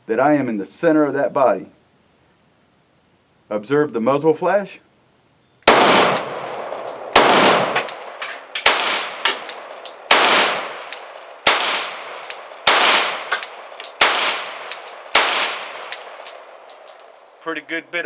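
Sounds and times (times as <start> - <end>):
pistol shots with echo: 5.6 - 17.2.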